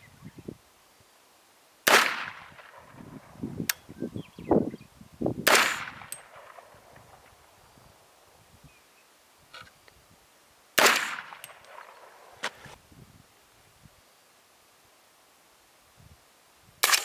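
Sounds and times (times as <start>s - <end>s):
suppressed rifle shots: 1.9s - 3.3s, 5.4s - 7.5s, 10.8s - 12.8s.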